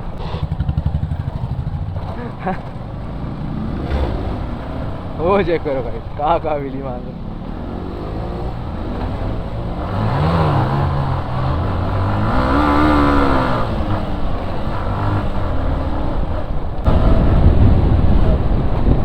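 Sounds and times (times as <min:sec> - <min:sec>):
motorcycle engine revving: 0:00.0 - 0:19.0
wind noise on microphone: 0:16.2 - 0:19.0.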